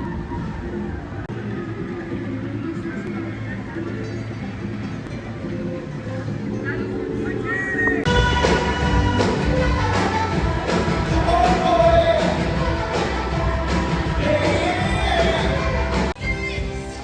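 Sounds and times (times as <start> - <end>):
song with singing over a beat: 8.1 - 17.0.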